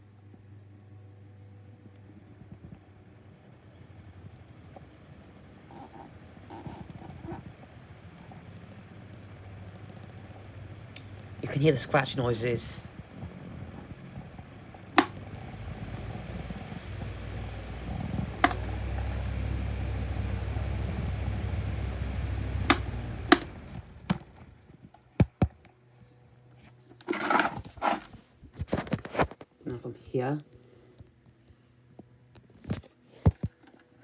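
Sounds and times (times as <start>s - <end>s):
desk fan motor humming: 3.9s - 25.3s, 26.6s - 28.2s
sharp clicks: 15.0s - 15.2s, 18.4s - 18.8s, 22.7s - 24.4s
bearings scratching: 26.6s - 28.2s.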